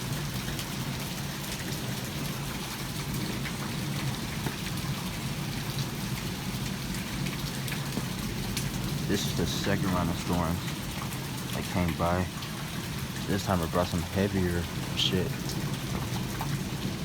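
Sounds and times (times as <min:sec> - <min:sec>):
heavy rain falling: 0:00.0 - 0:17.0
raindrops striking close by: 0:00.0 - 0:17.0.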